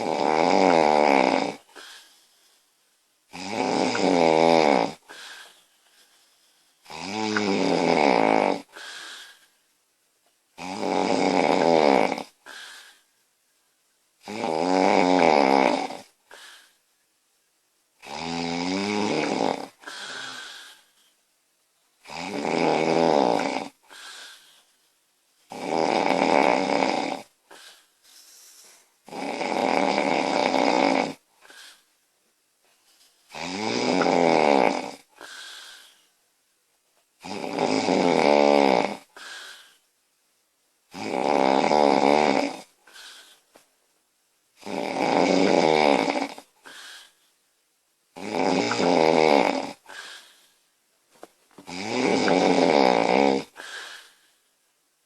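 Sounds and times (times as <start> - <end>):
woman snoring loudly: 0.0 - 1.9, 3.3 - 5.3, 6.8 - 8.9, 10.6 - 12.6, 14.2 - 16.5, 18.0 - 20.8, 22.0 - 24.0, 25.5 - 27.3, 29.1 - 31.2, 33.3 - 35.1, 37.2 - 39.3, 40.9 - 42.7, 44.6 - 46.5, 48.2 - 50.1, 51.7 - 54.0
soft breath: 27.5 - 29.0, 49.8 - 50.7, 53.5 - 54.5.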